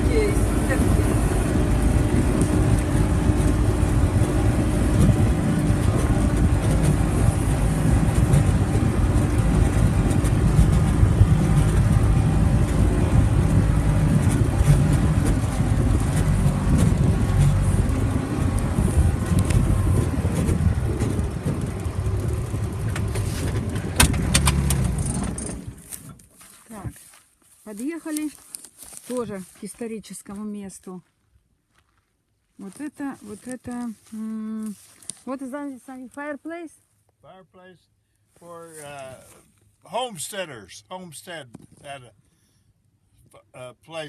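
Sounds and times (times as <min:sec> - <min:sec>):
vehicle driving low rumble: 0:00.0 - 0:30.9, 0:32.6 - 0:36.8.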